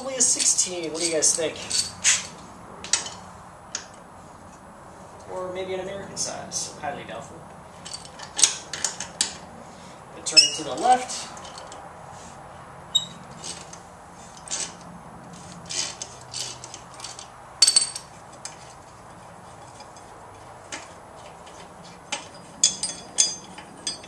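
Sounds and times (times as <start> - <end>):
metallic clinks from a wrench: 0.2 - 2.3, 22.2 - 24.0.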